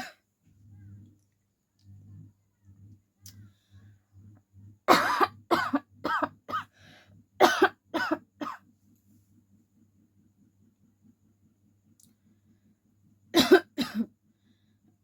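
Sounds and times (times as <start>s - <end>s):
person coughing: 4.9s - 6.7s, 7.4s - 8.6s, 13.4s - 14.1s.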